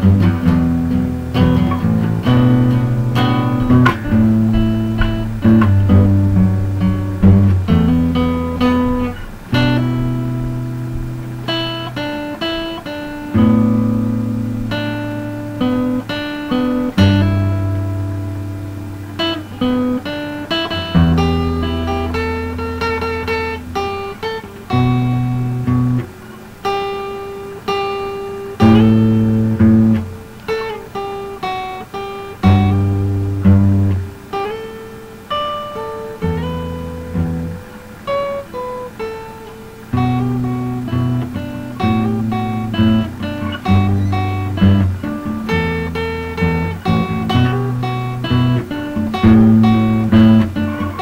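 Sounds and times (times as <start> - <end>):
low bass notes: 0.0 - 11.5
acoustic guitar music: 0.0 - 51.0.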